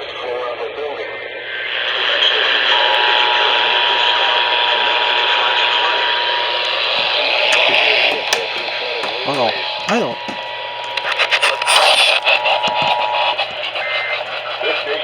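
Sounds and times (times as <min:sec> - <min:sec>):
clicks: 0:06.6 - 0:11.6.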